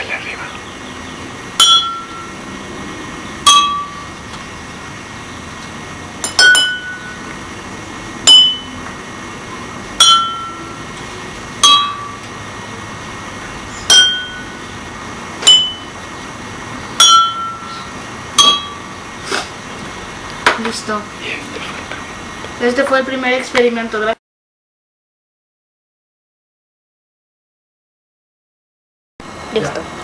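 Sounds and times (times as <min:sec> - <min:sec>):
spoon tapping water glasses: 0:03.4 - 0:04.1, 0:06.2 - 0:07.2, 0:10.0 - 0:10.8, 0:18.4 - 0:18.8.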